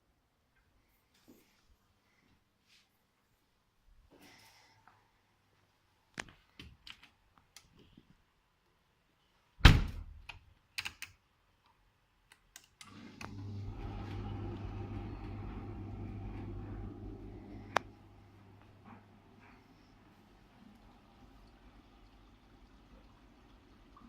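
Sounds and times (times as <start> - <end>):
washing machine rushing: 12.9 - 24.0.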